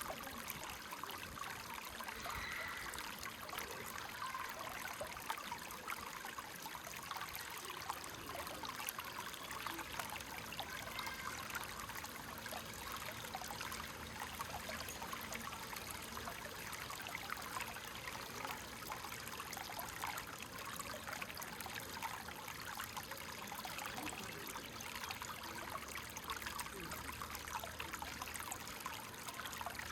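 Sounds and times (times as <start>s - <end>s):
creek water babbling over stones: 0.0s - 29.9s.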